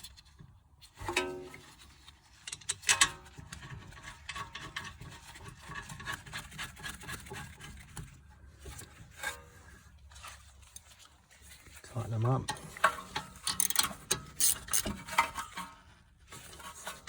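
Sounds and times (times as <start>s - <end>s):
bolts ticking as threaded in: 13.5s - 14.9s.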